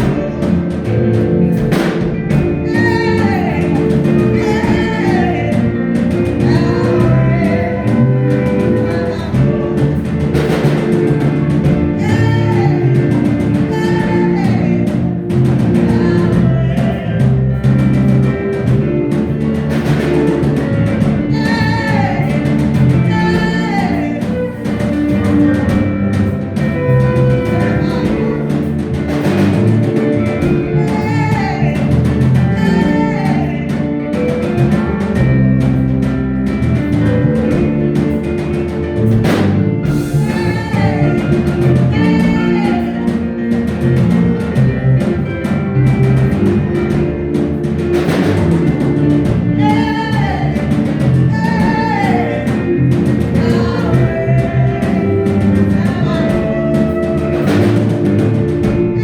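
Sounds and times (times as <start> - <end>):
gospel voices singing: 0.0 - 38.3, 39.0 - 59.0
drums: 0.0 - 59.0
guitar: 0.0 - 59.0.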